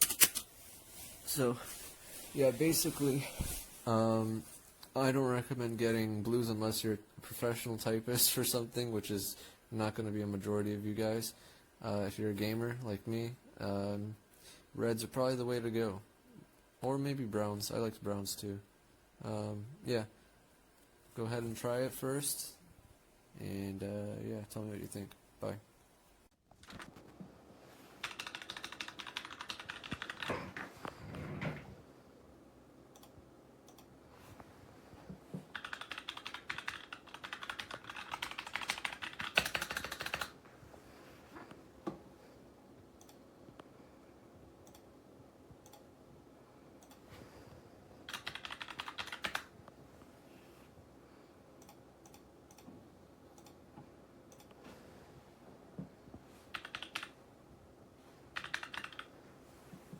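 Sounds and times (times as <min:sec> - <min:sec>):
mechanical keyboard typing: 0:00.0 - 0:00.5, 0:28.0 - 0:30.6, 0:35.5 - 0:40.4, 0:48.1 - 0:49.5, 0:56.5 - 0:57.2, 0:58.3 - 0:59.1.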